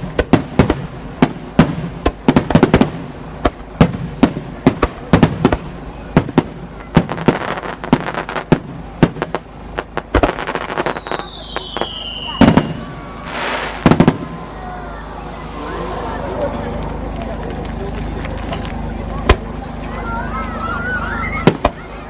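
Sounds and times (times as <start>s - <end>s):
fireworks bangs echoing: 0.0s - 19.8s, 21.2s - 22.0s
falling firework whistle: 10.1s - 17.1s, 20.1s - 21.9s.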